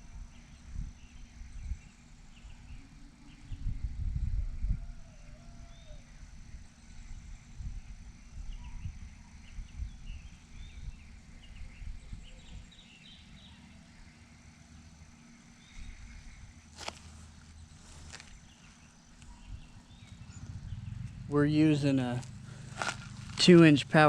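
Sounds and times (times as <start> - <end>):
uneven low rumble: 15.8 - 24.0
bird chirps: 17.5 - 23.8.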